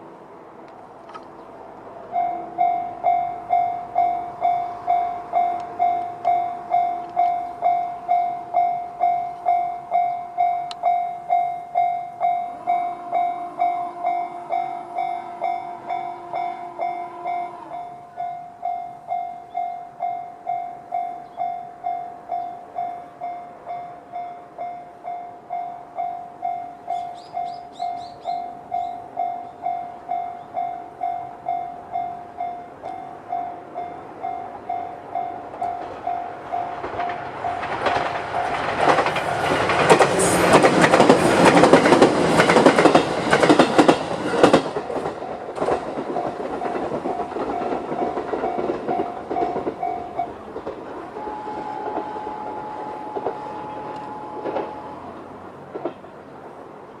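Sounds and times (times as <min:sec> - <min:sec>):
steady single tone: 0:02.1 - 0:37.7, 0:51.1 - 0:55.2
level crossing alarm ringing: 0:02.1 - 0:39.2, 0:39.8 - 0:55.2
train wheels clattering over rail joints: 0:32.8 - 0:56.2.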